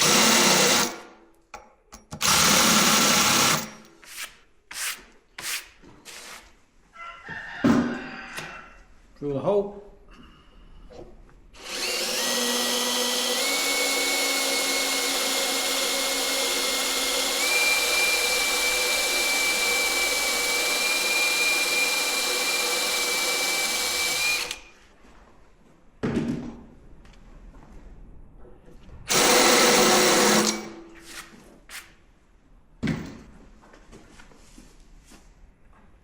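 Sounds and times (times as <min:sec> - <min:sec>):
electric drill whining: 0:00.0 - 0:01.0, 0:02.2 - 0:03.7, 0:11.6 - 0:24.7, 0:29.1 - 0:30.8.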